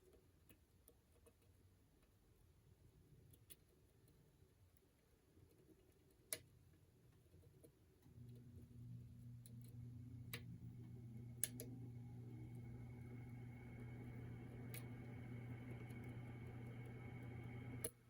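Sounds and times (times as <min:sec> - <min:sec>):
low steady hum: 0:08.0 - 0:18.0.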